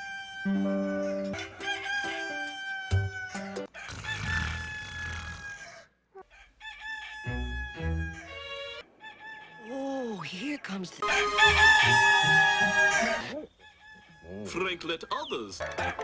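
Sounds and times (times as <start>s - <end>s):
rooster crowing: 0.0s - 9.8s, 11.0s - 14.4s.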